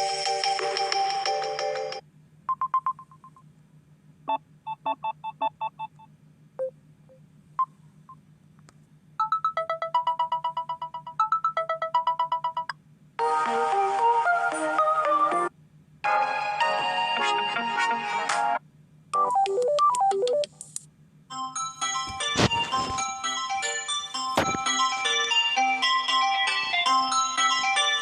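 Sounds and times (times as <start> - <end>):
electronic ringtone melodies: 9.2 - 15.3, 21.3 - 28.0.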